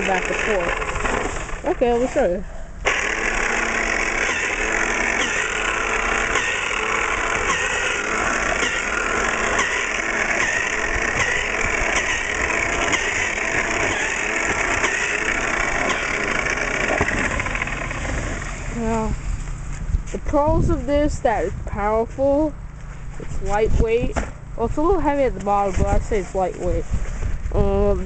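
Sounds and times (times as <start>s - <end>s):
electric snow thrower running: 0.0s - 19.7s.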